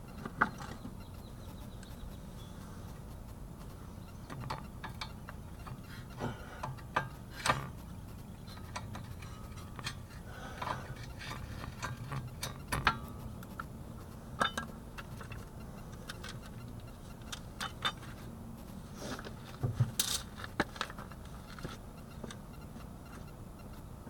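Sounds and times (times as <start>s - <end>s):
sharp metal clanks: 14.4s - 15.4s.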